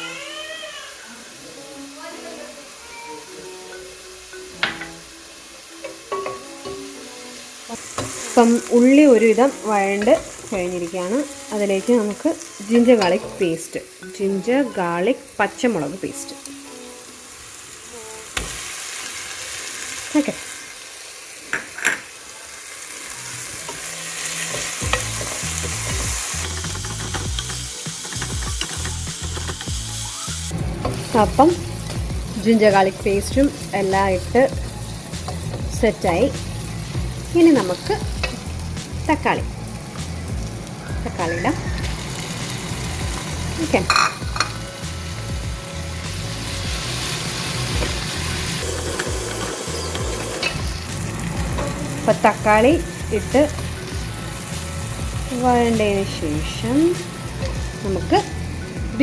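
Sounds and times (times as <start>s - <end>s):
onions sizzling in hot oil: 0.0s - 59.0s
spoon scraping and tapping pan: 3.8s - 5.0s, 5.8s - 7.1s, 24.4s - 29.8s, 43.9s - 44.6s
utensil clinking against pan: 5.8s - 7.0s.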